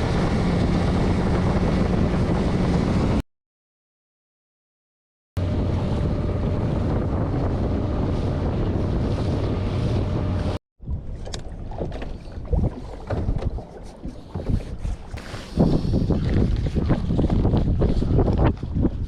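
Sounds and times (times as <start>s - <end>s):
outboard motor running: 0.0s - 3.2s, 5.4s - 19.0s
wind on microphone: 0.0s - 3.2s, 5.4s - 19.0s
water splashing against hull: 5.4s - 19.0s.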